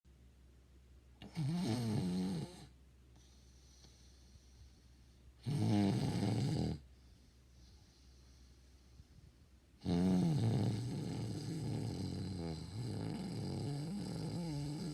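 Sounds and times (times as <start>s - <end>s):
person snoring: 5.4s - 6.8s, 9.8s - 14.9s.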